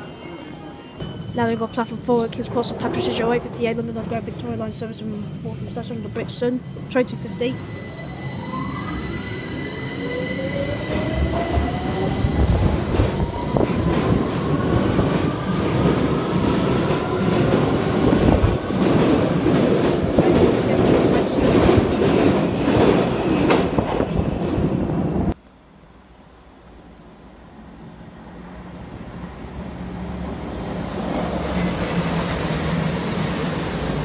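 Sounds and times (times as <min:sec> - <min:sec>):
train wheels rumbling on rails: 0:10.5 - 0:25.4.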